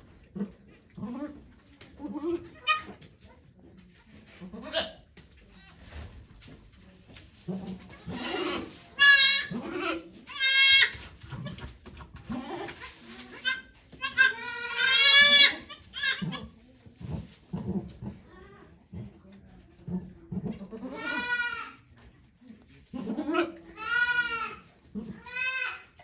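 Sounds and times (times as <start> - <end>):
goat bleating: 8.1 - 11.6, 12.3 - 16.5, 20.8 - 21.8, 23.1 - 25.9.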